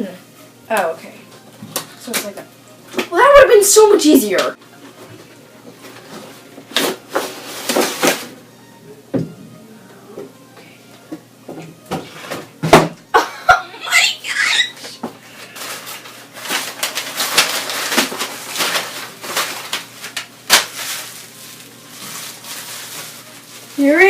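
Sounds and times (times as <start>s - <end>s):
crinkling and rustling wrapping: 5.8s - 8.3s, 15.3s - 24.0s.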